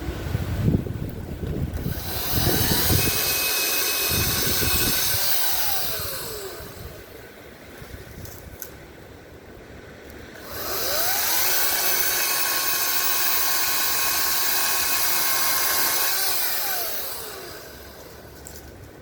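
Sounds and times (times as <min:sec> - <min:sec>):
battery chainsaw whining: 0:01.7 - 0:07.3, 0:10.3 - 0:18.8.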